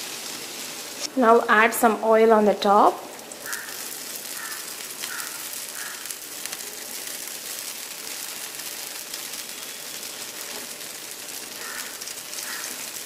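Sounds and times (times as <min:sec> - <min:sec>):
batter sizzling on a hot pan: 0:00.0 - 0:01.1, 0:03.1 - 0:13.0
faint crackles: 0:03.3 - 0:13.0.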